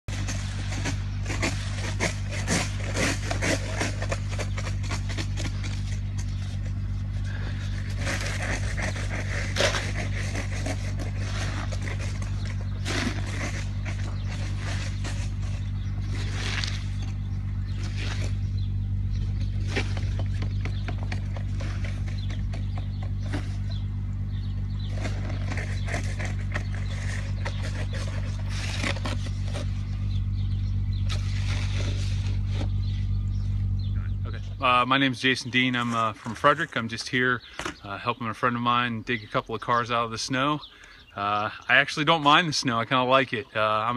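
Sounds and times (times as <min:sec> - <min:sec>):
motor idling: 0:00.0 - 0:43.9
steady low hum: 0:00.0 - 0:43.9
snow shovel scraping snow: 0:00.1 - 0:18.7, 0:19.4 - 0:23.8, 0:24.8 - 0:30.2, 0:30.9 - 0:33.1, 0:34.6 - 0:37.8.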